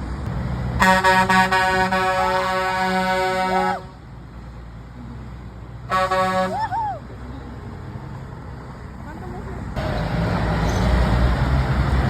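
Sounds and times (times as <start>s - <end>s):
road traffic noise: 0.0s - 12.0s
truck air horn blasts: 0.8s - 4.0s, 5.9s - 6.7s.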